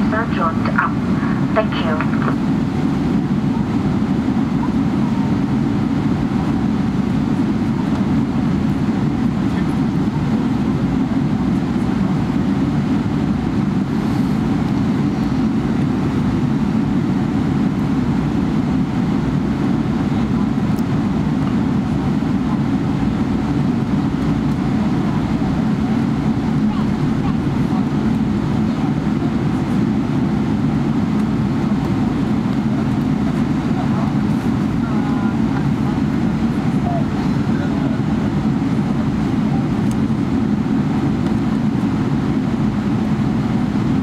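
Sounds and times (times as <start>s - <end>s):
airliner cabin rumble: 0.0s - 44.0s.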